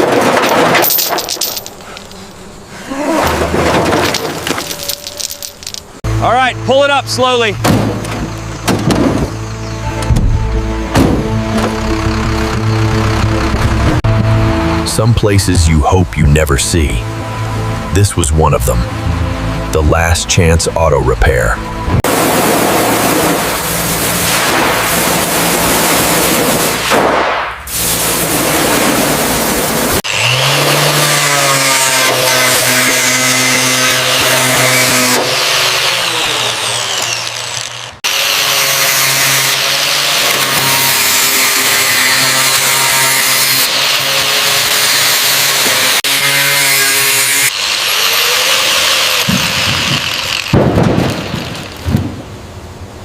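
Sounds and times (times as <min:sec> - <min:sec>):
low thuds: 0:10.0 - 0:14.4
machine hissing rush: 0:22.1 - 0:26.9
quieter tool sound: 0:30.0 - 0:50.5
power tool hissing: 0:47.0 - 0:51.8.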